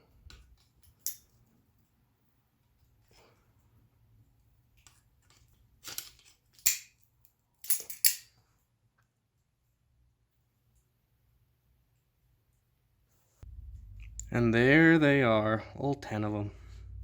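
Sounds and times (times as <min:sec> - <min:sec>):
steel hooks clinking: 0:00.8 - 0:01.3, 0:05.8 - 0:07.0, 0:07.6 - 0:08.4
faint low hum: 0:09.6 - 0:17.0.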